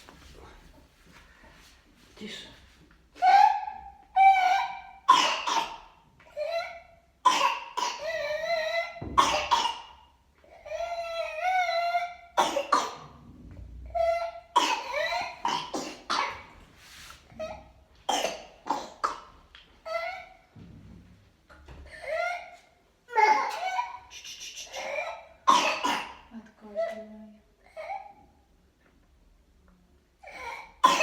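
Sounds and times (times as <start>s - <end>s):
child coughing: 5.0s - 6.0s, 7.2s - 8.3s, 9.1s - 10.0s, 12.4s - 13.2s, 14.5s - 16.5s, 18.1s - 19.4s, 24.8s - 26.3s, 30.3s - 31.0s
high-pitched whooping breaths: 24.1s - 25.2s.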